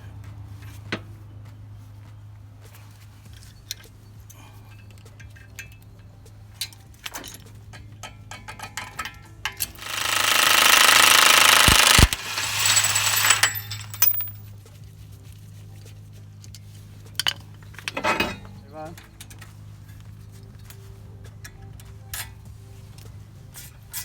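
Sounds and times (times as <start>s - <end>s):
metal clinks: 9.6s - 14.5s
impact wrench hammering: 9.8s - 14.4s.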